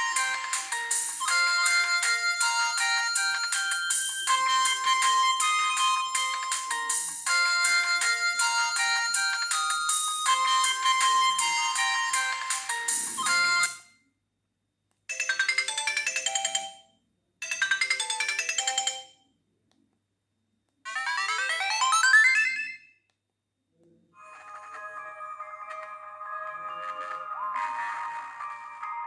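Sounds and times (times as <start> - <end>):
mobile phone ringtones: 1.2 - 13.9, 15.1 - 19.2, 20.9 - 22.9, 24.2 - 29.0.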